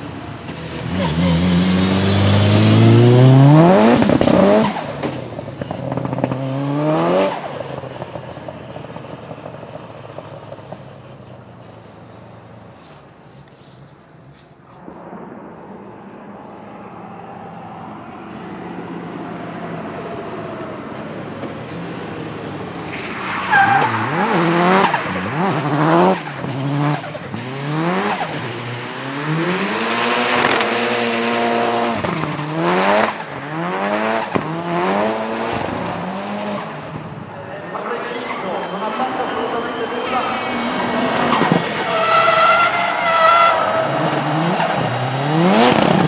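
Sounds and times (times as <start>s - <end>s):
turbocharged car engine revving: 0.0s - 11.0s, 16.0s - 46.0s
tyres squealing: 37.6s - 45.9s.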